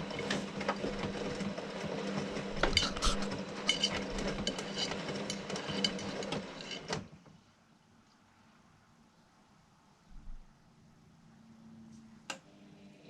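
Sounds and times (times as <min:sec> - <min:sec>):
washing machine motor hum: 0:00.0 - 0:07.1.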